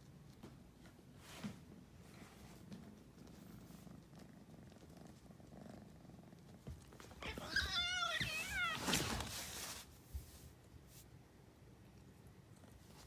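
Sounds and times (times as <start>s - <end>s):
kitten trilling meow: 7.2s - 9.0s.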